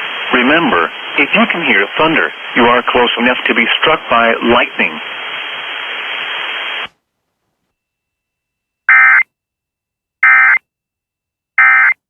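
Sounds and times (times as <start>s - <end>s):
digital data tone bursts: 8.9s - 9.2s, 10.2s - 10.6s, 11.6s - 12.0s.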